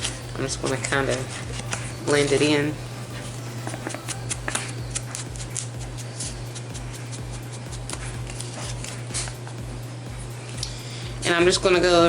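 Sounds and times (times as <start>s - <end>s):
ink pad tapping and scraping paper: 0.0s - 9.6s
steady low hum: 0.0s - 12.0s.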